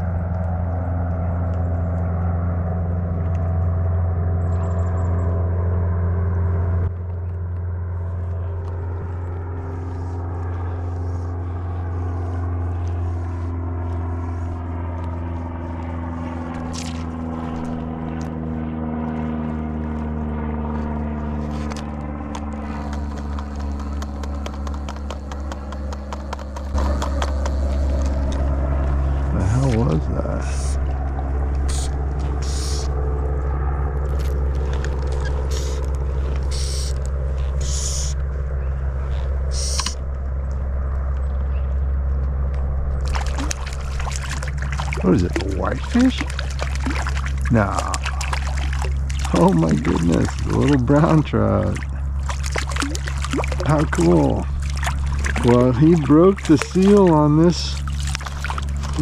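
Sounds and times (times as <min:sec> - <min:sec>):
engine humming: 0:00.0 - 0:59.0.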